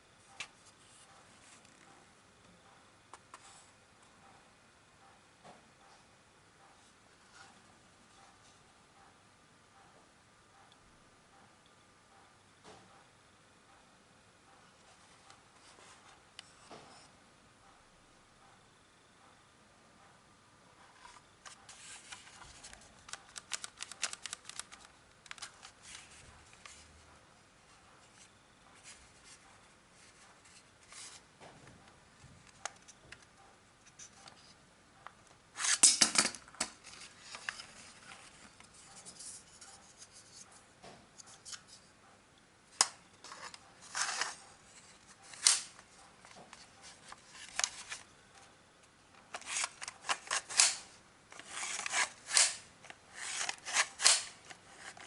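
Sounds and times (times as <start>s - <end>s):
plastic parts rattling: 21.7s - 26.8s, 49.2s - 55.0s
toy pistol plastic clicking: 23.1s - 25.5s, 49.3s - 54.6s.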